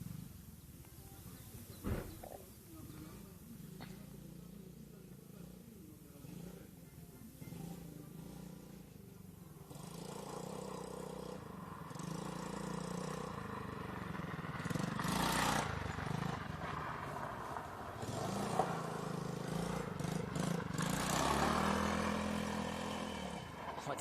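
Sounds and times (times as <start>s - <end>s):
small atv engine running: 0.0s - 1.7s, 2.9s - 24.0s.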